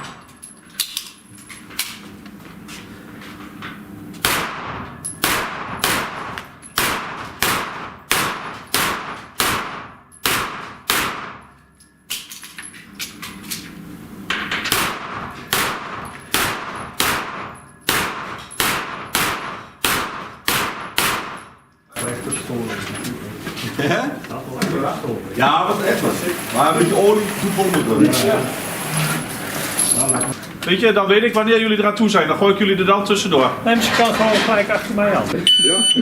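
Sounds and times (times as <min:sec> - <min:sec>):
pistol shots ringing on steel: 0:04.2 - 0:11.6, 0:14.7 - 0:21.6.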